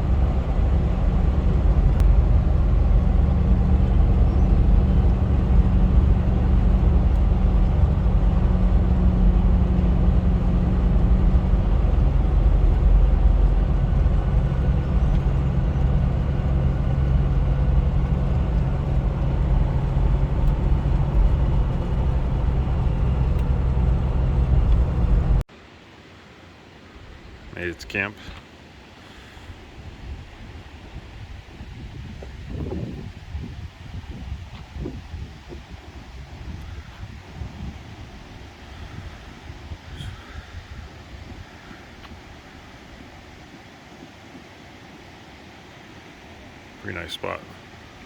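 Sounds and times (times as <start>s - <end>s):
engine drone: 0.0s - 25.5s
road rumble: 0.0s - 25.8s, 26.9s - 48.0s.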